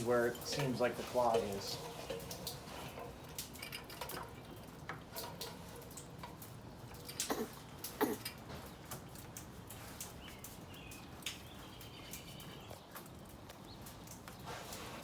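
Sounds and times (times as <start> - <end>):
tools tapping on metal downspout: 0.0 - 14.4
bird chirping: 10.2 - 13.9.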